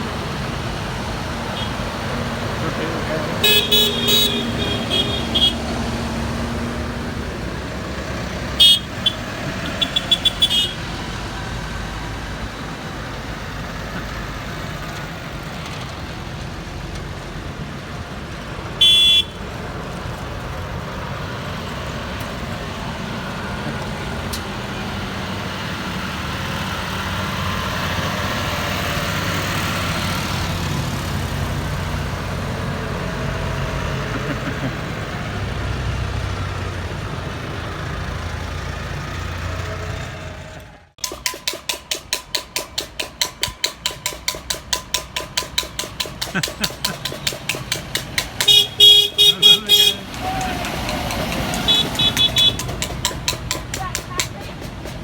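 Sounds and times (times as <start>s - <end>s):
tractor engines running: 0.0s - 55.0s
horns tooting: 1.4s - 7.2s, 8.2s - 11.2s, 18.7s - 19.8s, 46.2s - 54.7s.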